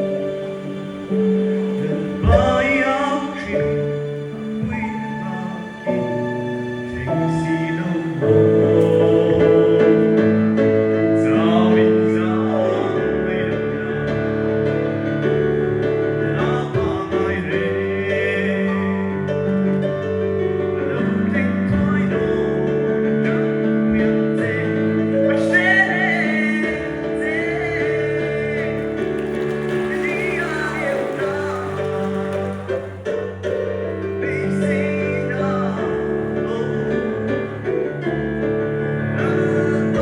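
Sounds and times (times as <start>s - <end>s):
held keyboard chords: 0.0s - 40.0s
singers with male voice: 1.7s - 6.2s, 6.9s - 14.5s, 20.8s - 33.4s, 34.1s - 37.8s, 39.1s - 40.0s.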